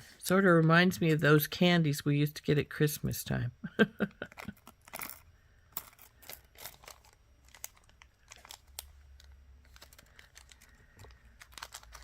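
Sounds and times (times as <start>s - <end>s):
plastic bags crinkling: 4.2s - 12.0s
glass beads clicking: 4.5s - 8.9s.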